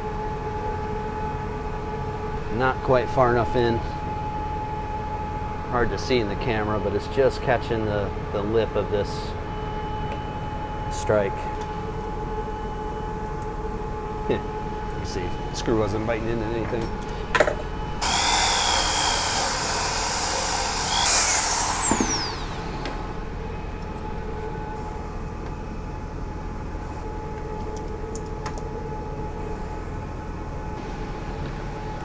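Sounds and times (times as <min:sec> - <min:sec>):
steady low hum: 0:00.0 - 0:32.0
power tool whining: 0:18.0 - 0:24.4.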